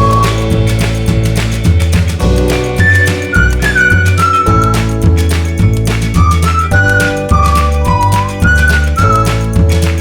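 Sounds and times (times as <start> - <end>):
electronic music with lead melody: 0.0 - 10.0.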